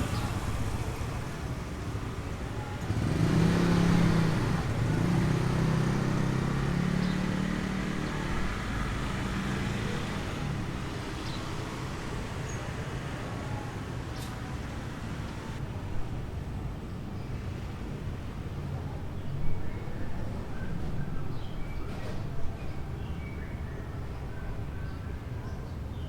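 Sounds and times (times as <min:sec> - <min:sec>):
vehicle engine passing by: 0:00.0 - 0:01.8, 0:02.6 - 0:13.1.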